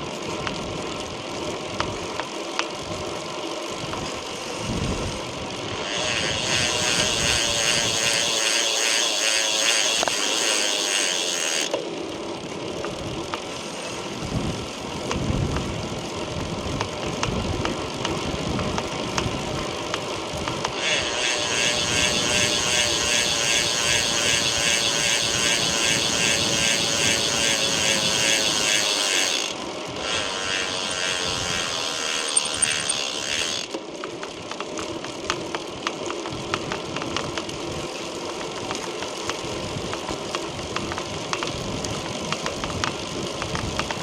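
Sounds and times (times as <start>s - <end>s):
bicycle hub ratchet buzzing: 0.2s - 44.0s
sharp hub clicks: 5.7s - 11.9s, 16.7s - 37.6s.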